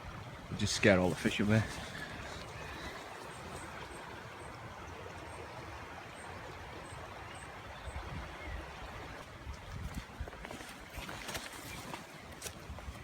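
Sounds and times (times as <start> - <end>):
river water rushing: 0.0 - 13.0
wind rumbling on microphone: 7.7 - 13.0.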